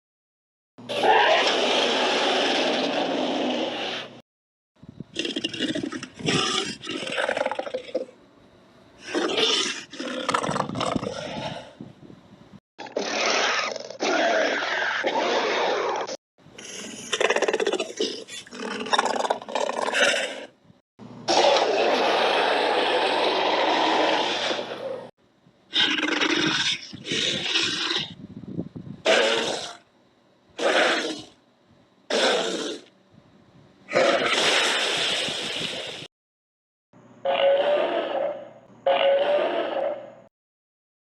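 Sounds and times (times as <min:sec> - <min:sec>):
prehistoric animal roars and grunts: 0:00.9 - 0:04.2, 0:09.0 - 0:11.8, 0:12.8 - 0:20.6, 0:21.3 - 0:25.1, 0:25.7 - 0:28.2, 0:29.0 - 0:29.8, 0:33.9 - 0:35.4, 0:37.2 - 0:40.3.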